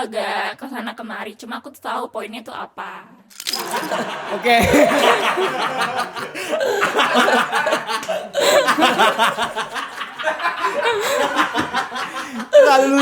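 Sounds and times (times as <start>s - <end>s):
group of people laughing: 3.5s - 13.0s.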